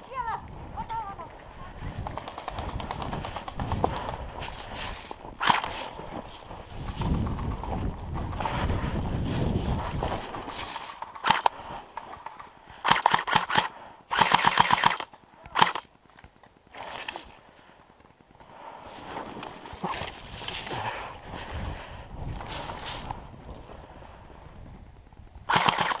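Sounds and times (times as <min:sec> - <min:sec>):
airsoft guns firing: 0:05.4 - 0:05.9, 0:11.0 - 0:11.6, 0:12.3 - 0:15.9, 0:25.5 - 0:26.0.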